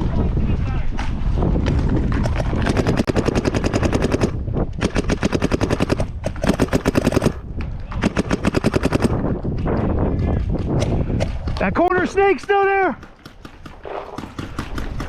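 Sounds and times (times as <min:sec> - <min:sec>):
paintball marker rapid firing: 0:01.7 - 0:11.5, 0:12.4 - 0:15.0.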